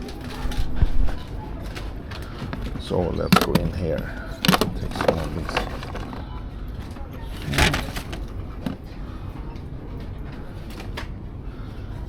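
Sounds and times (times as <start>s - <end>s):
candy rustling and clattering: 0.0s - 8.8s
low supermarket hum: 0.0s - 12.0s.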